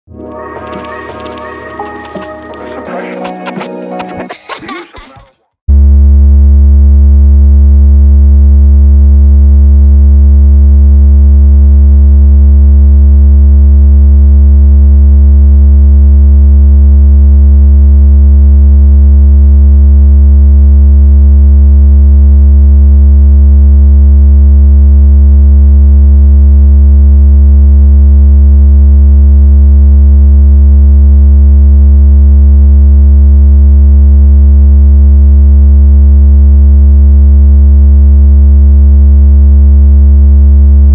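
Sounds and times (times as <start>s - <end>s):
deep electronic bass tone: 5.7s - 21.1s, 27.7s - 40.9s.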